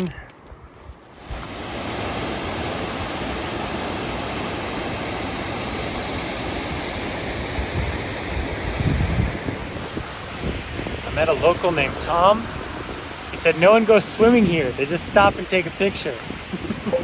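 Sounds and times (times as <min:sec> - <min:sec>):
wind rumble on microphone: 0:00.4 - 0:17.0
waterfall roaring: 0:01.4 - 0:17.0.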